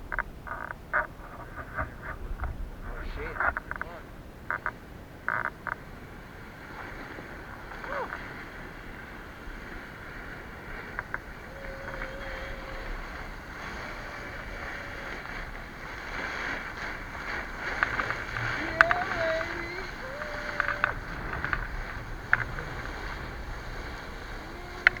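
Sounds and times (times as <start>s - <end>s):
sandboard sliding on gravel: 7.3s - 25.0s.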